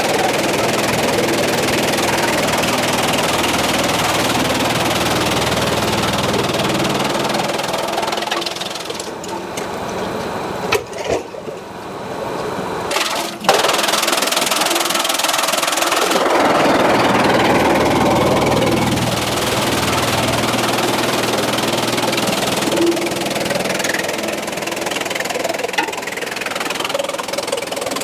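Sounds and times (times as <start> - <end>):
sawmill machinery running: 0.0 - 28.0
loud rushing noise: 15.8 - 25.2.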